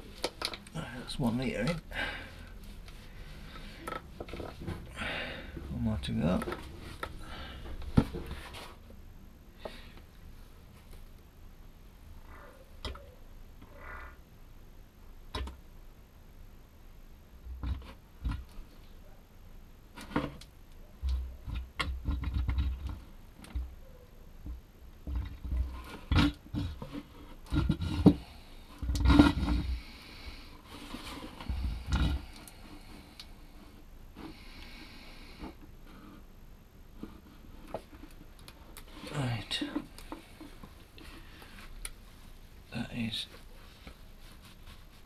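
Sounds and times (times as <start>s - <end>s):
clunks and clicks of hand work: 15.3s - 15.6s, 17.5s - 18.7s, 19.9s - 23.7s, 24.4s - 29.7s.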